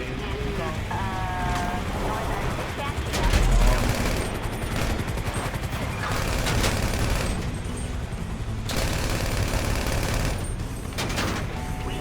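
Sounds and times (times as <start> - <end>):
game music: 0.0 - 12.0
video game gunfire: 3.0 - 7.8, 8.7 - 12.0.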